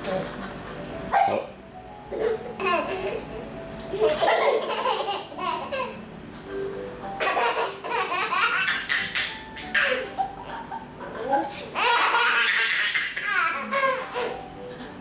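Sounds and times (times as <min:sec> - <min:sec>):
baby laughing: 0:02.1 - 0:06.0, 0:07.2 - 0:14.4.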